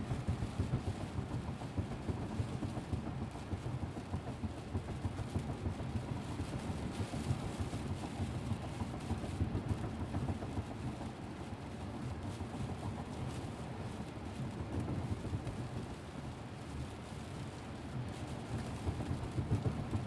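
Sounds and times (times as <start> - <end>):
rain hissing on car: 5.9 - 9.9, 10.5 - 20.0.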